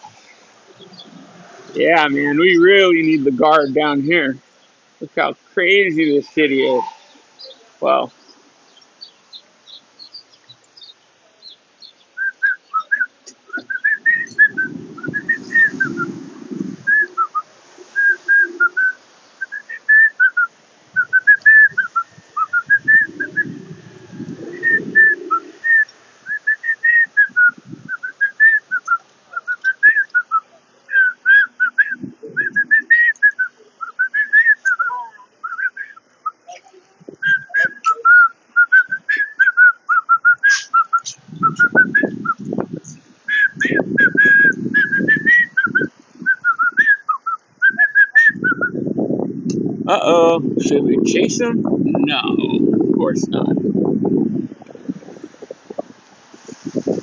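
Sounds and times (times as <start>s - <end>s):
high whistled chirps: 6.0s - 49.0s
low rumbling noise: 13.6s - 18.9s, 21.0s - 25.8s, 48.4s - 57.0s.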